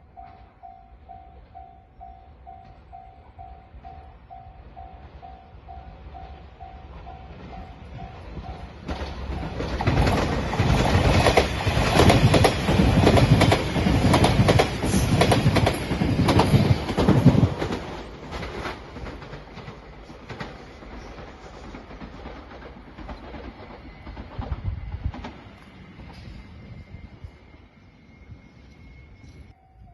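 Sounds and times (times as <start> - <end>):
train rushing by: 0.0 - 29.9
wheels clacking over rail joints: 5.0 - 26.3.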